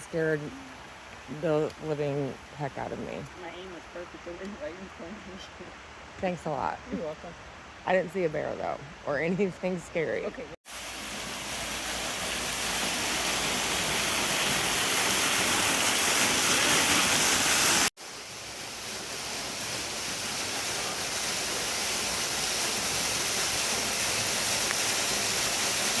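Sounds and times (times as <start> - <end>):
waterfall rushing: 10.7 - 26.0.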